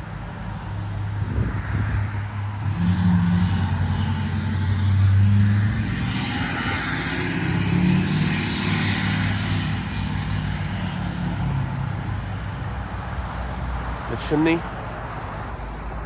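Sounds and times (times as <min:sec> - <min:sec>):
car engine hum: 0:00.0 - 0:16.0.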